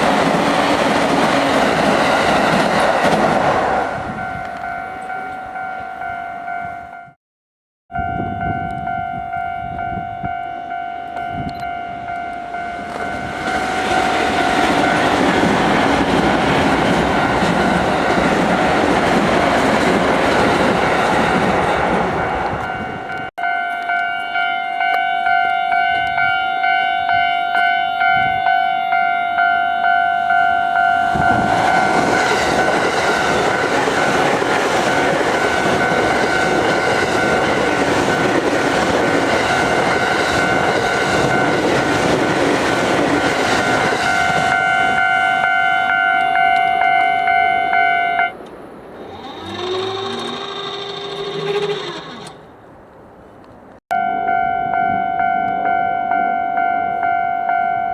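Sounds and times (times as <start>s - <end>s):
train wheels clacking over rails: 0.0s - 3.8s, 31.2s - 44.6s
level-crossing warning bell: 3.9s - 7.2s, 7.9s - 19.2s, 20.6s - 42.6s, 43.2s - 52.3s, 53.9s - 57.9s.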